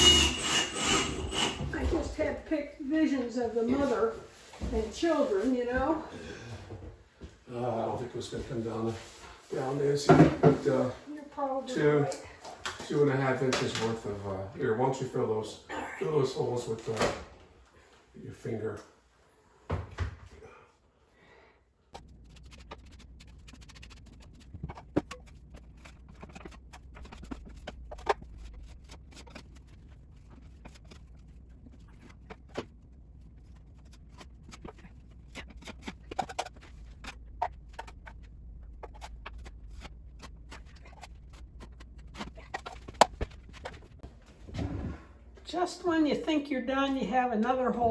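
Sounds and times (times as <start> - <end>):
clicks taps and scrapes of hand work: 22.0 - 44.1.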